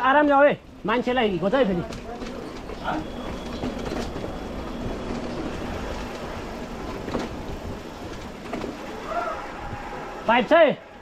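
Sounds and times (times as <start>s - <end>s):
mountain bike rolling over rough ground: 0.1s - 10.3s
bike knocks and rattles: 6.8s - 9.1s.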